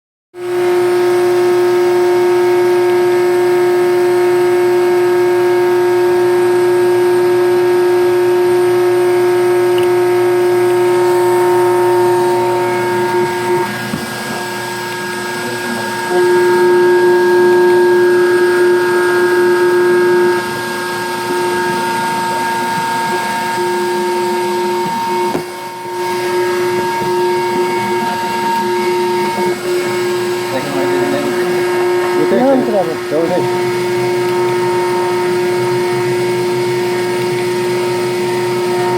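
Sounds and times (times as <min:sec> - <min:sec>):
lathe motor whine: 0:00.4 - 0:38.9.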